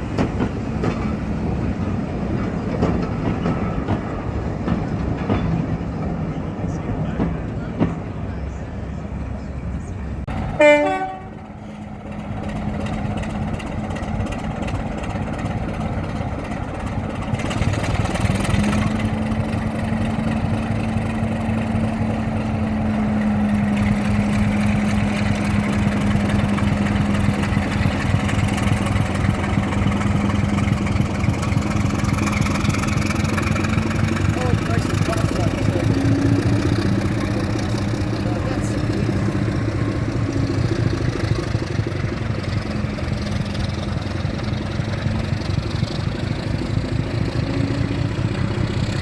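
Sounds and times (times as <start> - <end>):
locomotive running: 0.0 - 49.0
train horn toot: 10.6 - 11.5.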